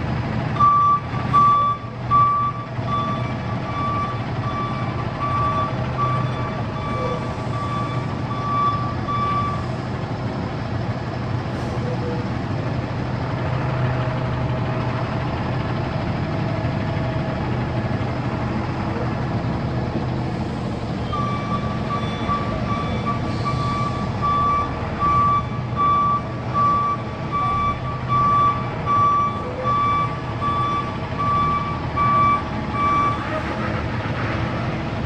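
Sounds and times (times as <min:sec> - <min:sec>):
forklift engine running: 0:00.0 - 0:35.0
reversing alarm beeping: 0:00.6 - 0:09.6, 0:21.0 - 0:33.3.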